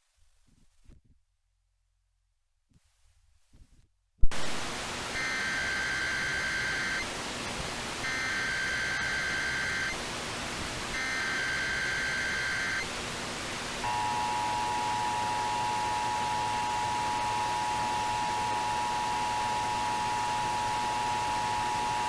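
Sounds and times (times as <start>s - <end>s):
steady hiss: 4.3s - 22.0s
digital data tones: 8.0s - 10.0s, 11.0s - 12.9s
two-tone attention signal: 8.1s - 9.9s, 11.0s - 12.8s, 13.8s - 22.0s.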